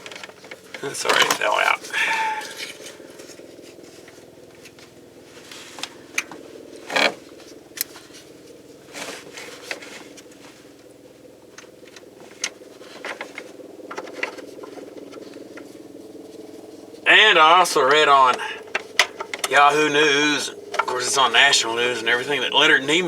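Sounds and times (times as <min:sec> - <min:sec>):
clicks and rattles of parts handled: 0:00.0 - 0:05.0, 0:05.8 - 0:10.4, 0:11.5 - 0:15.8
steady low hum: 0:00.0 - 0:23.0.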